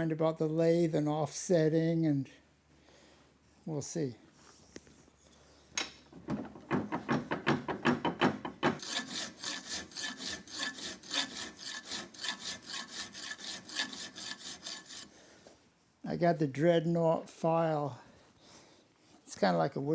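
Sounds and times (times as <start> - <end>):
file cutting aluminum: 8.1 - 15.1.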